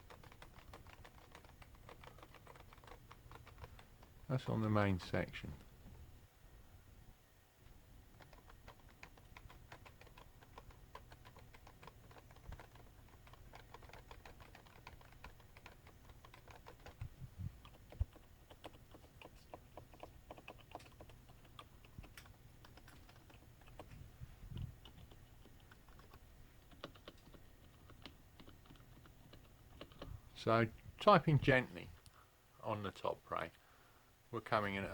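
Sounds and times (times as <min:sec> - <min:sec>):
soft keyboard typing: 0:00.0 - 0:04.5, 0:08.0 - 0:30.2.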